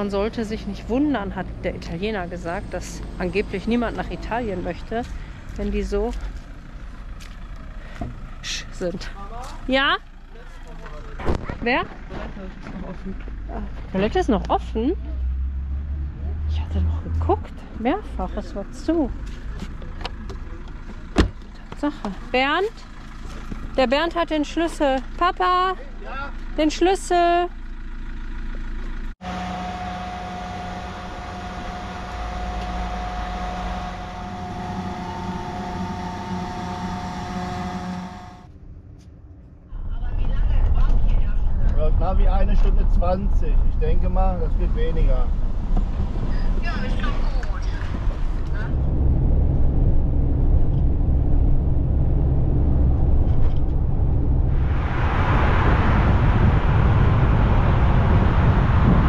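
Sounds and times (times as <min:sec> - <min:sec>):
car engine and road rumble: 0:00.0 - 0:59.0
constant whining tone: 0:00.0 - 0:59.0
mechanical hum: 0:29.2 - 0:42.6.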